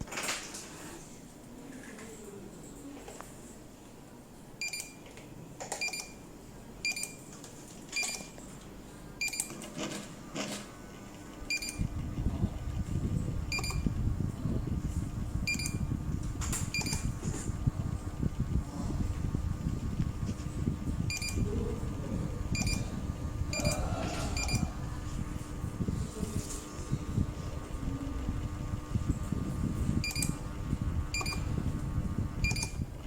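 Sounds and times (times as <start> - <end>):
low rumbling hum: 11.4 - 33.0
short electronic beeps: 32.4 - 32.8.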